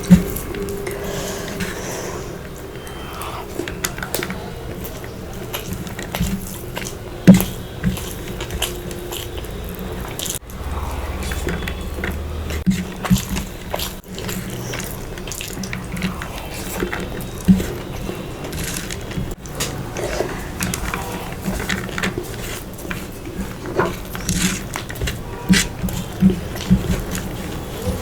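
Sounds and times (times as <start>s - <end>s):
person biting and chewing: 2.4s - 28.0s.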